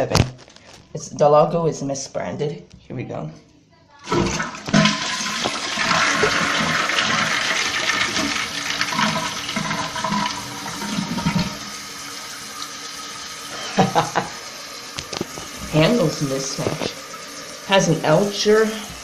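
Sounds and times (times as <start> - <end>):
toilet flushing: 4.0 - 19.0
water running: 4.0 - 19.0.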